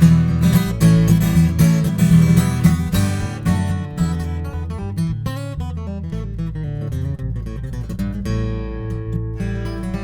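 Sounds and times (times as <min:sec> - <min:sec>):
acoustic guitar chords: 0:00.0 - 0:10.0
bass notes: 0:00.0 - 0:10.0.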